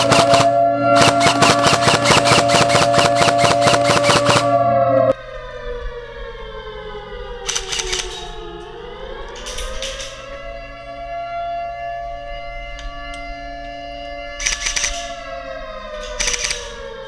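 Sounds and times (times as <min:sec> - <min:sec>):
short noisy bursts: 0:00.0 - 0:04.5
siren wail with clicking pulses: 0:00.0 - 0:17.0
siren winding down and up: 0:00.0 - 0:17.0.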